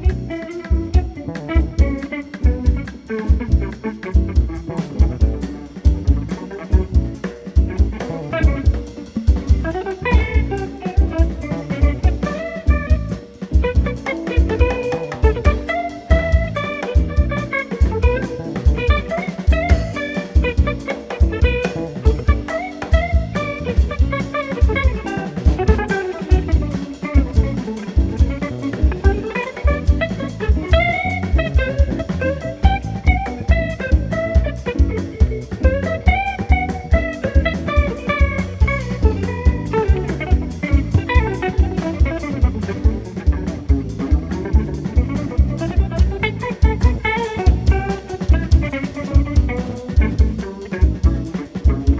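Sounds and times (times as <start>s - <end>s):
drum kit steady beat: 0.0s - 51.9s
electric guitar: 0.0s - 51.9s
double bass: 23.0s - 51.9s.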